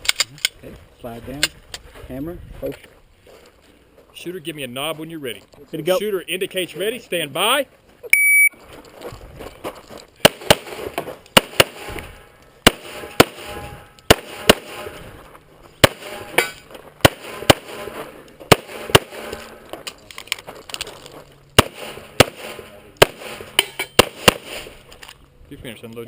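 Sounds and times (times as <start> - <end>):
pistol shots in quick pairs: 10.2 - 15.0, 15.8 - 19.6, 21.6 - 24.7.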